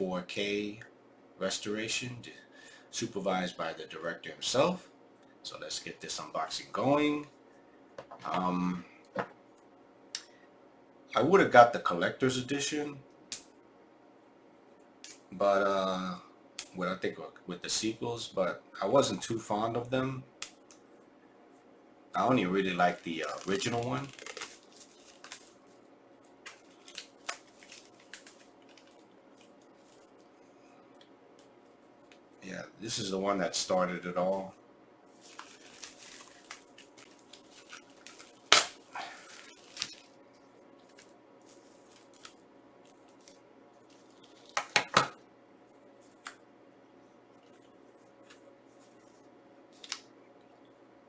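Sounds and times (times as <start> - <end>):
plastic packaging handling: 22.8 - 30.4, 35.1 - 45.2.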